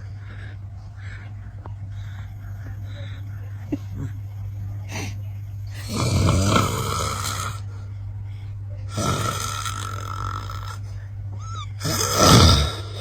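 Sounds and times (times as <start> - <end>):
steady low hum: 0.0 - 13.0
person snoring loudly: 5.7 - 7.7, 8.9 - 10.8, 11.8 - 13.0.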